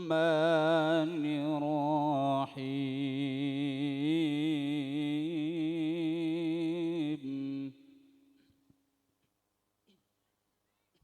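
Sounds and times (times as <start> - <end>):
man reciting melodically: 0.0 - 7.8.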